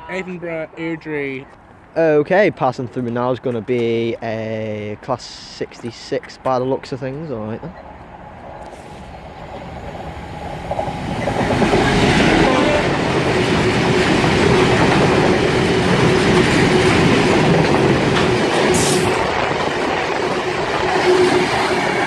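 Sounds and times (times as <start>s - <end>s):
train wheels on rails: 2.8s - 22.0s
diesel locomotive engine: 6.8s - 22.0s.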